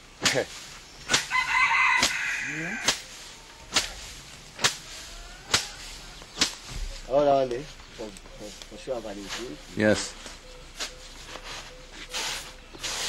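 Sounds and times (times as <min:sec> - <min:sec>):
rice threshing strikes: 0:00.0 - 0:10.1, 0:10.7 - 0:13.0
rooster crowing: 0:01.2 - 0:03.1, 0:04.8 - 0:06.2.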